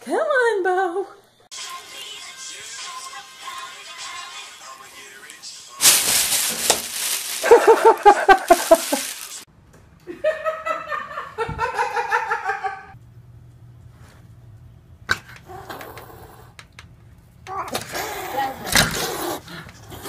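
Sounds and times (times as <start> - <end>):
people laughing: 7.4 - 9.4, 10.1 - 13.0.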